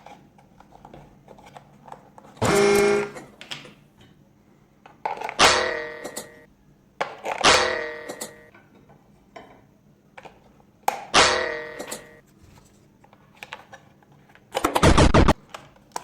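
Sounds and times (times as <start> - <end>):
loud burst of noise: 14.8 - 15.4.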